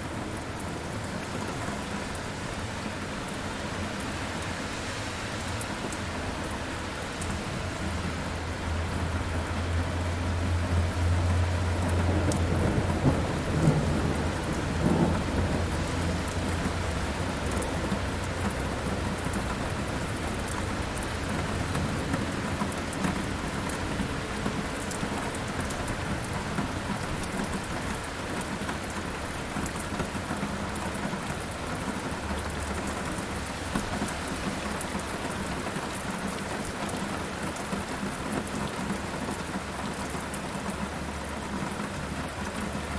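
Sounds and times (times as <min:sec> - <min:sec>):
steady rain falling: 0:00.0 - 0:42.9
thunder rolling: 0:12.0 - 0:16.6.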